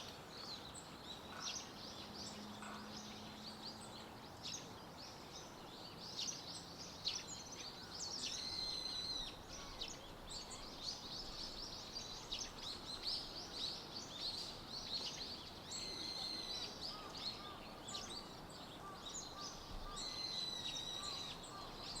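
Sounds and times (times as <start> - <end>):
birds chirping and calling: 6.0 - 22.0.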